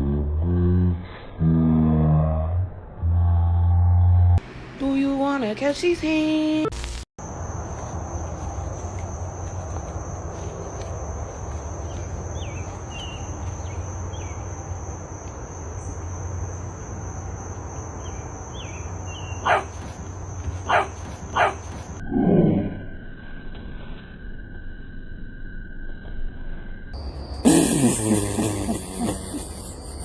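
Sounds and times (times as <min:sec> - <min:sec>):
faint chirps: 0:11.3 - 0:20.8
dog barking: 0:19.4 - 0:20.0, 0:20.6 - 0:21.9.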